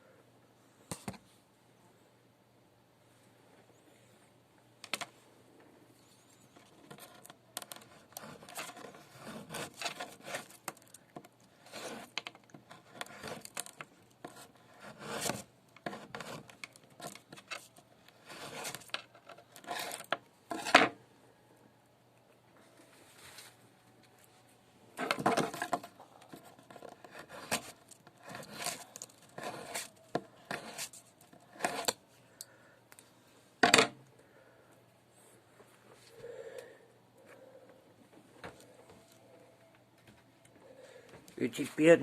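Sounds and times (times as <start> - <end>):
rubbing and scraping small parts: 6.0 - 21.0, 25.0 - 32.1.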